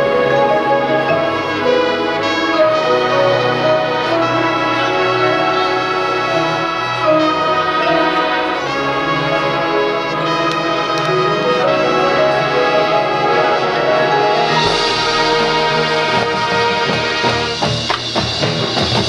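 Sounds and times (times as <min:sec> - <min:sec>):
marching band brass chords: 0:00.0 - 0:19.0.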